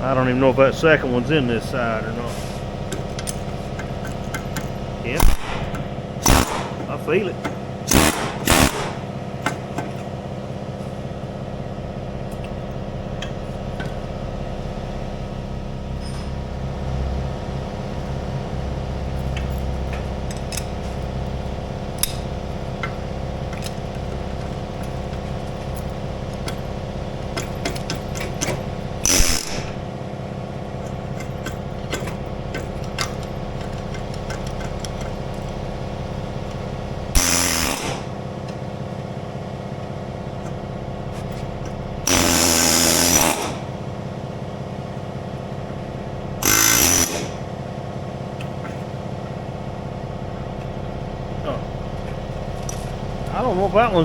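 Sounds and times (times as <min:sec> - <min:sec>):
steady mechanical hum: 0:00.0 - 0:54.0
loud noisy bursts: 0:05.0 - 0:07.3, 0:07.9 - 0:09.1, 0:29.0 - 0:29.9, 0:37.1 - 0:38.1, 0:46.4 - 0:47.4.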